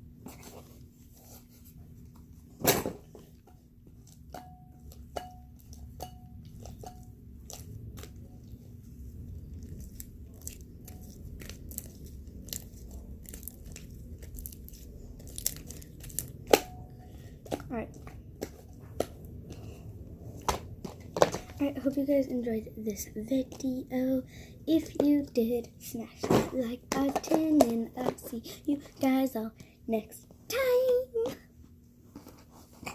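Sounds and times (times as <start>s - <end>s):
slime squishing with sticky pops: 4.9s - 16.7s.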